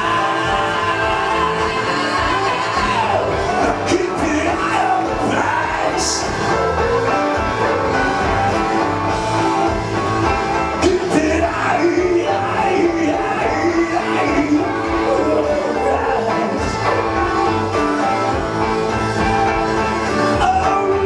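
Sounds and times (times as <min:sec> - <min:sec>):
man singing: 0:00.0 - 0:06.8, 0:10.8 - 0:18.4, 0:20.0 - 0:21.0
karaoke backing track: 0:00.0 - 0:21.0.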